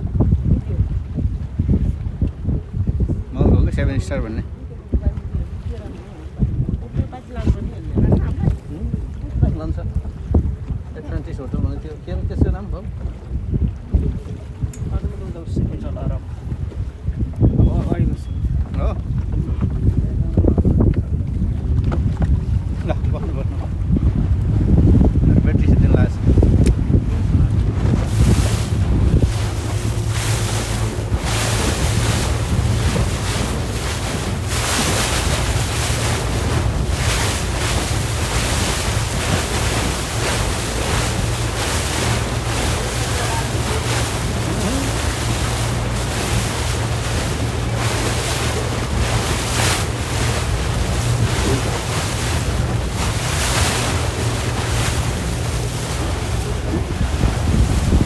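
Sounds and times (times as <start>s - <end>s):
water rushing past hull: 0.0s - 58.0s
wind buffeting microphone: 0.0s - 58.0s
speedboat engine drone: 22.6s - 58.0s.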